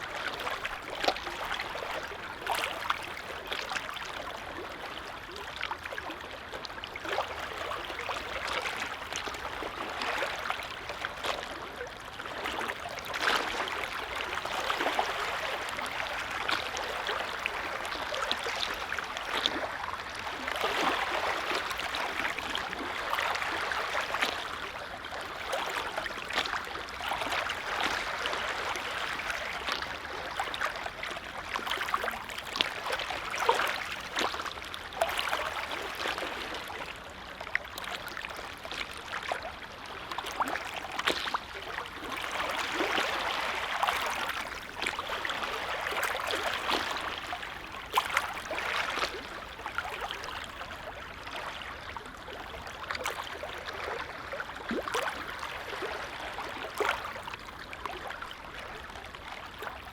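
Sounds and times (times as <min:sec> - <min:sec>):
small waves lapping: 0:00.0 - 0:59.9.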